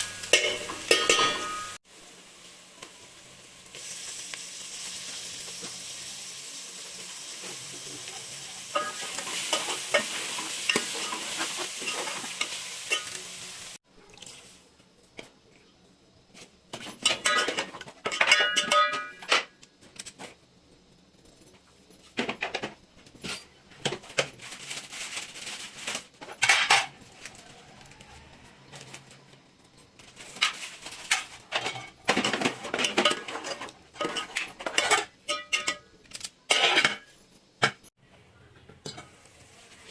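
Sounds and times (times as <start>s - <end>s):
metal utensils clinking on dishes: 0.0s - 1.8s, 8.7s - 13.4s, 16.8s - 19.5s, 30.3s - 37.8s
food sizzling in a pan: 0.0s - 14.8s, 30.1s - 37.2s, 38.8s - 39.9s
spoon stirring and scraping: 29.8s - 35.9s.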